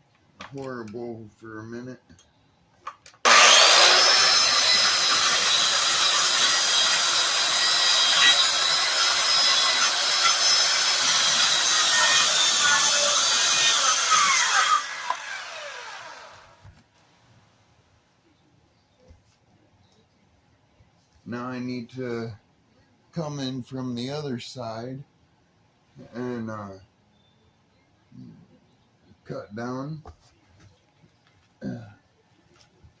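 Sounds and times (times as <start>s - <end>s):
circular saw cutting wood: 3.3s - 16.6s.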